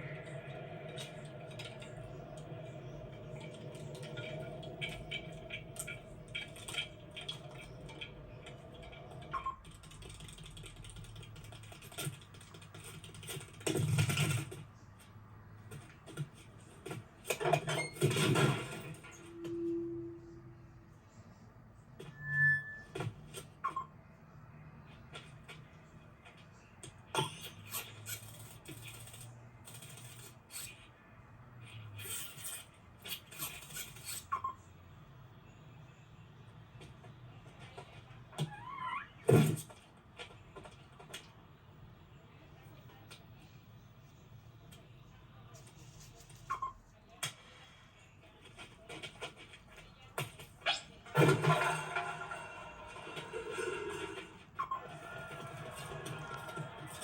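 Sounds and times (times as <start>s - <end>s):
small clicks and clattering: 1.0s - 19.1s.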